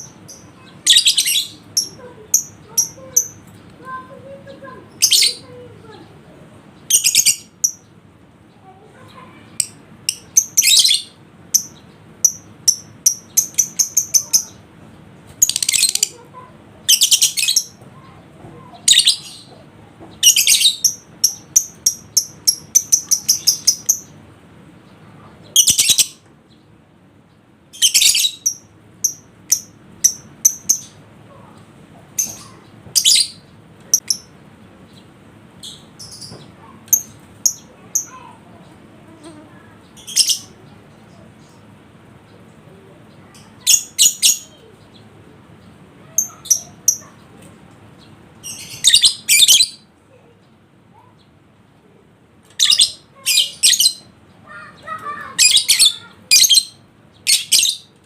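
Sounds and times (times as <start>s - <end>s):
bird chirping shrilly: 52.6s - 57.9s.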